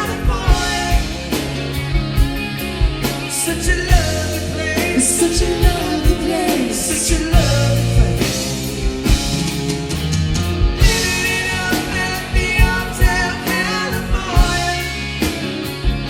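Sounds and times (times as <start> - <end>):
lead vocalist singing: 0.0 - 9.7, 10.8 - 15.9
drums steady beat: 0.0 - 16.0
rock band playing: 0.0 - 16.0.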